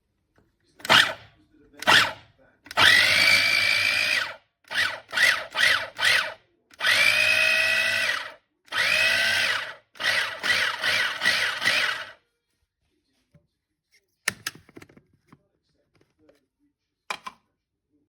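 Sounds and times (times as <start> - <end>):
food chopper motor whining: 0.8 - 1.2, 1.8 - 12.2.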